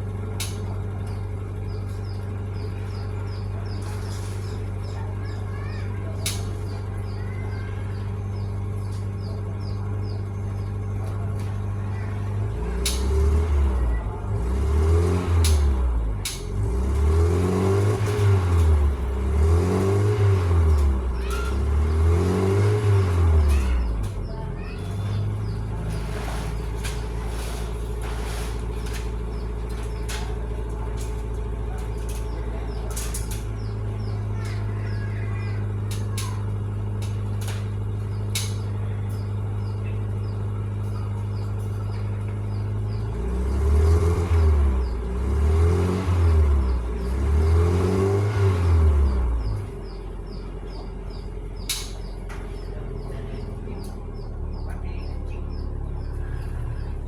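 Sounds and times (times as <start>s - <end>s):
birds chirping faintly: 0.0s - 57.0s
car engine idling and revving: 0.0s - 57.0s.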